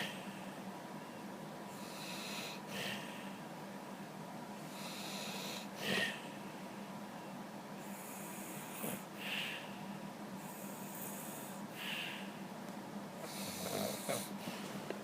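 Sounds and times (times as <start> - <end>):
man snoring: 1.7 - 3.0, 4.7 - 6.2, 13.2 - 14.4.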